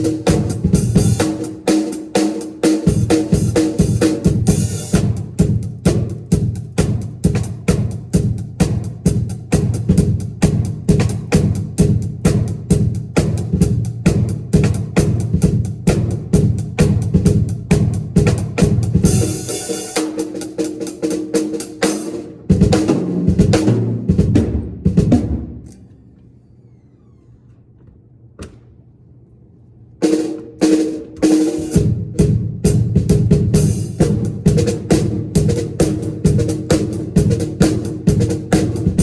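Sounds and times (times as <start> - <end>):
drum kit kick and snare: 0.0 - 25.6, 30.0 - 39.0
cymbal wash: 19.1 - 20.3.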